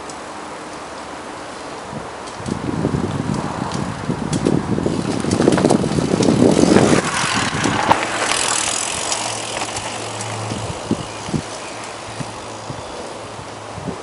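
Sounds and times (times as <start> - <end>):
mountain bike rattling over dirt: 2.3 - 13.5.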